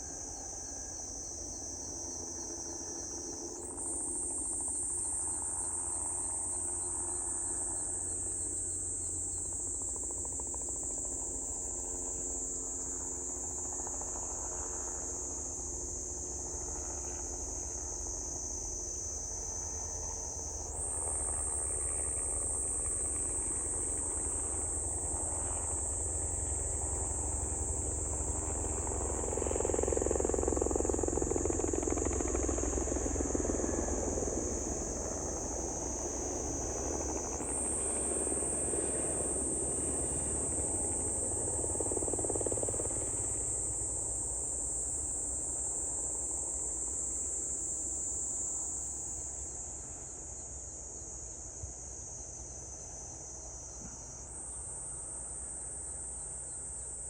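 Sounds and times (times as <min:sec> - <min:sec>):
helicopter rotor pulsing: 0:02.2 - 0:47.9
insects chirring: 0:08.0 - 0:49.6.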